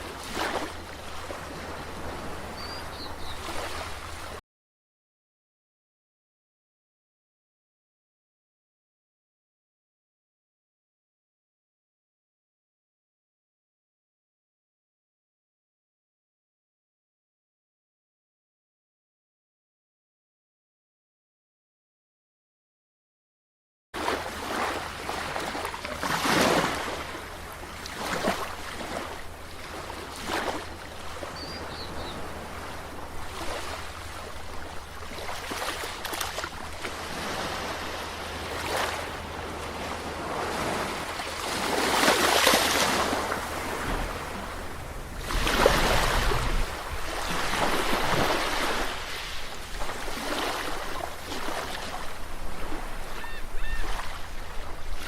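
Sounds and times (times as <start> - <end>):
sea waves breaking on shore: 0.0 - 4.4, 24.0 - 55.0.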